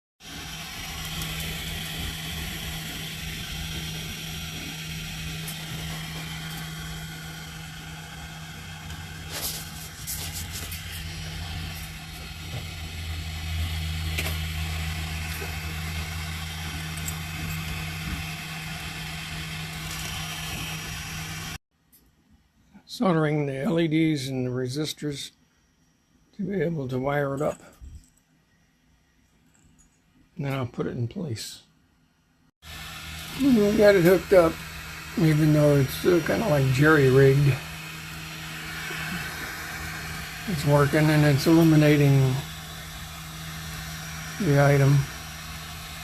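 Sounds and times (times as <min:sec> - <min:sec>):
deeper hum: 0:00.2 - 0:21.6, 0:32.6 - 0:46.0
steady machine hum: 0:00.2 - 0:21.6, 0:32.1 - 0:46.0.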